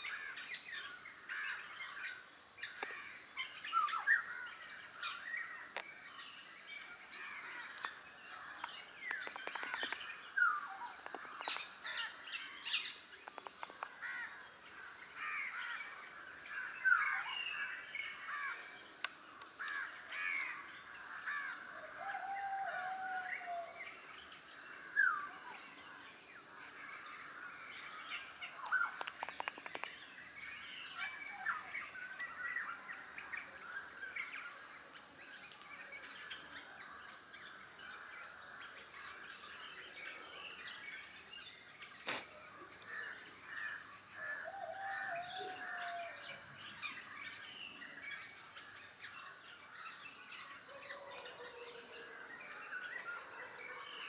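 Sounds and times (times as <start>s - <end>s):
small birds chirping: 7.3s - 21.5s, 26.8s - 36.6s.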